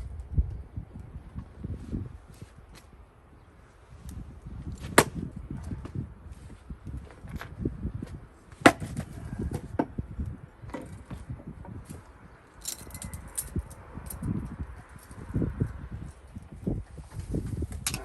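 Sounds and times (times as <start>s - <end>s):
axe splitting wood: 4.8s - 5.2s, 8.6s - 9.1s.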